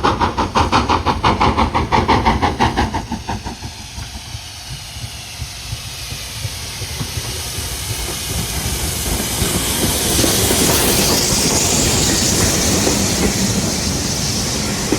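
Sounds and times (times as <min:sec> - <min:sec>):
steam hiss: 0:00.0 - 0:14.9
steam locomotive exhaust beats: 0:00.0 - 0:14.9.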